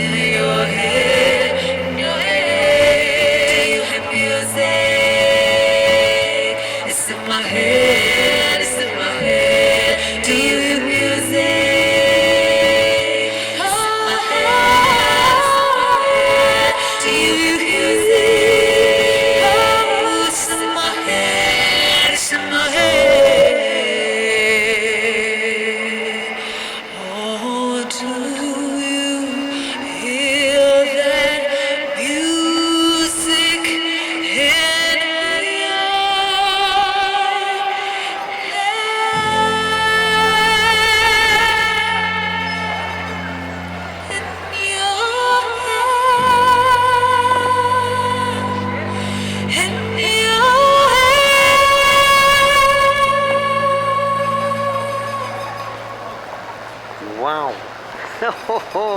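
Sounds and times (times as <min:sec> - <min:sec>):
person singing long notes: 0:00.0 - 0:57.7
steady low bass: 0:39.2 - 0:44.8, 0:45.4 - 0:57.2.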